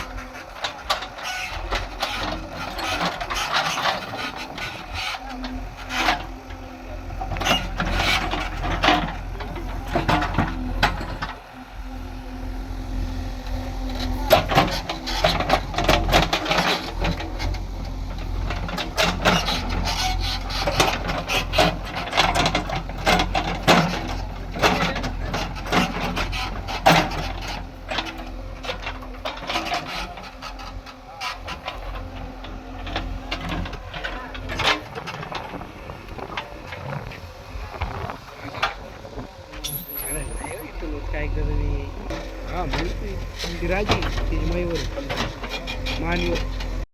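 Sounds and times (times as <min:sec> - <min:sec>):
diesel engine low rumble: 0:00.0 - 0:46.9.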